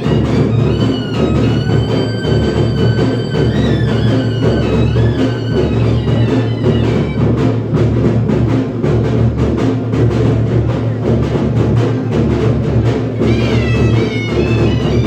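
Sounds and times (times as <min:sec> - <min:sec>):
high wavering melody: 0:00.0 - 0:07.3, 0:13.2 - 0:15.0
heavy drums beating: 0:00.0 - 0:15.0.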